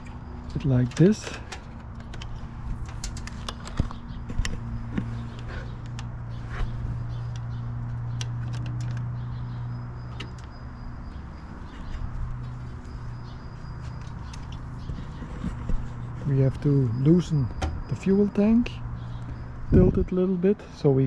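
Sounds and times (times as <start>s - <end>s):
power cable clicking and tapping: 0.1s - 6.2s.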